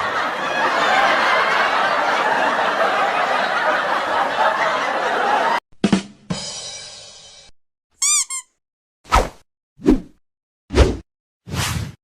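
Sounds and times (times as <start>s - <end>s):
crowd laughing: 0.0s - 5.6s.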